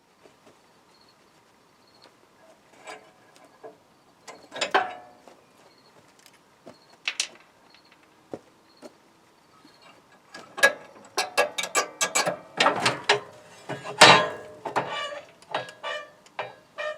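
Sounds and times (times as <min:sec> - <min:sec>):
hand tools clinking on metal: 0:04.3 - 0:05.2, 0:10.3 - 0:16.6.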